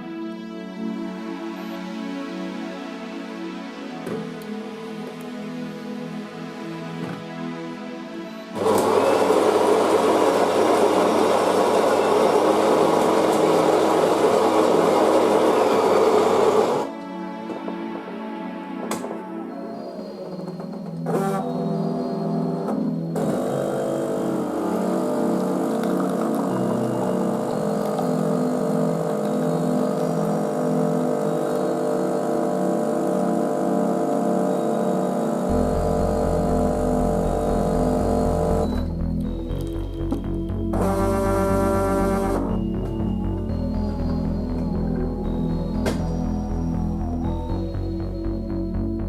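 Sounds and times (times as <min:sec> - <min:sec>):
droning chord music: 0:00.0 - 0:49.0
coffee machine whirring: 0:08.6 - 0:16.9, 0:19.8 - 0:48.2.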